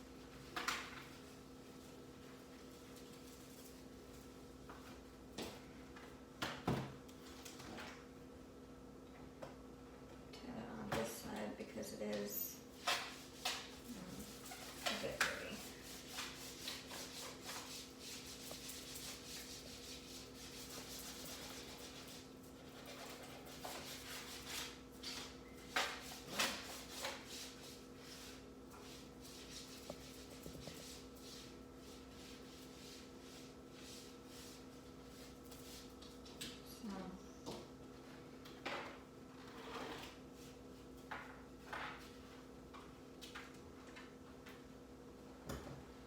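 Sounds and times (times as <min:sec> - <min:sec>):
cloth wiping laptop: 0:12.8 - 0:35.9.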